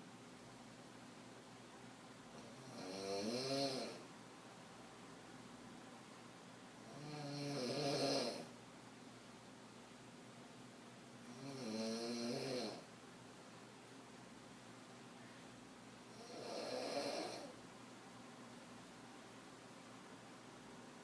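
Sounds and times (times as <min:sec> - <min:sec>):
woman snoring: 0:02.4 - 0:04.0, 0:06.9 - 0:08.5, 0:11.3 - 0:12.9, 0:16.1 - 0:17.6.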